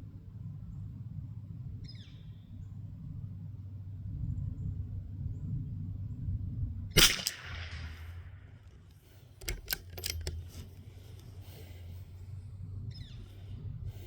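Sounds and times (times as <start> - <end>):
rifle bolt clicking: 7.0 - 8.0, 9.4 - 10.7
rifle shot: 7.0 - 8.5.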